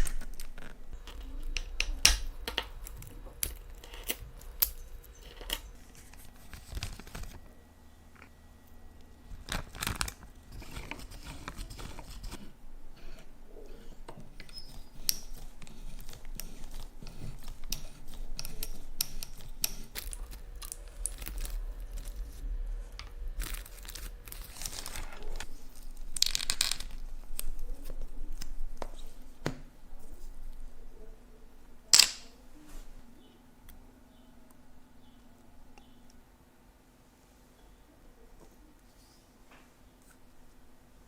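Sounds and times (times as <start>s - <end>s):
rustling: 9.2s - 31.1s
small metal tools clicking and scraping: 13.0s - 22.1s.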